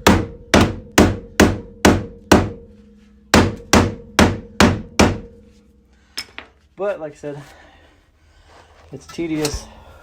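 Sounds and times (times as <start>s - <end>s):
hammer blows on ringing sheet metal: 0.0s - 6.3s.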